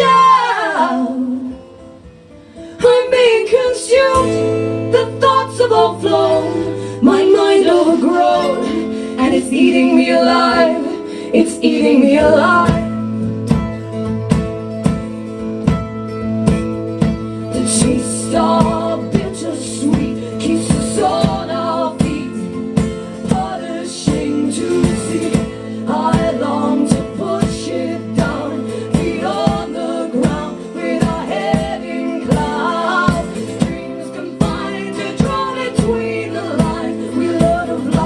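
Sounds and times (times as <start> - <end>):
women singing: 0.0 - 1.7, 2.8 - 13.1, 17.5 - 38.0
strummed guitars: 0.0 - 38.0
steady drum beat: 12.7 - 38.0.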